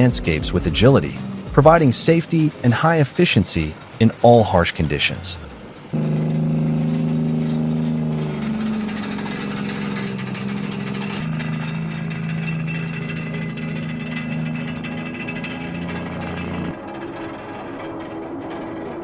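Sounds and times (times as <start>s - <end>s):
heavy machine engine running: 0.0s - 19.0s
mechanical clatter and rattling: 6.8s - 19.0s.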